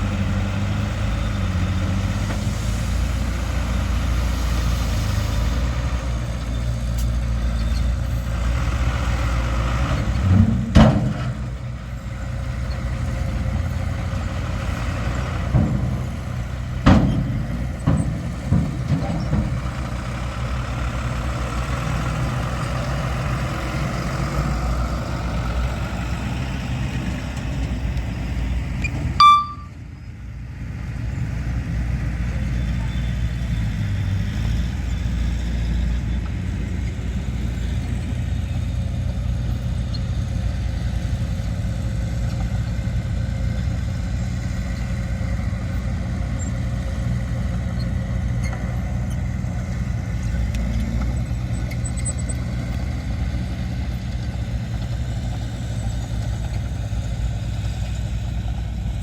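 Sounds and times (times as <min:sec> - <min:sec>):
heavy diesel machinery running: 0:00.0 - 0:59.0
brief high tone: 0:29.2 - 0:29.8.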